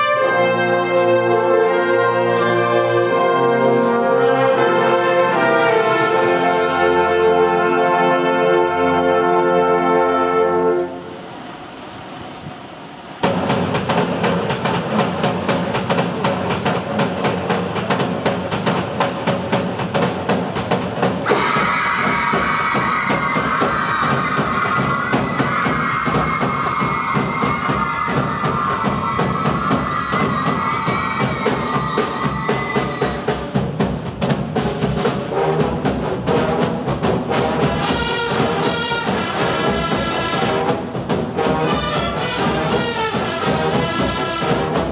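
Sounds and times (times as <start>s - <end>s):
wind band playing: 0.0s - 11.8s, 13.2s - 44.9s
drums fast steady beat: 13.2s - 44.9s.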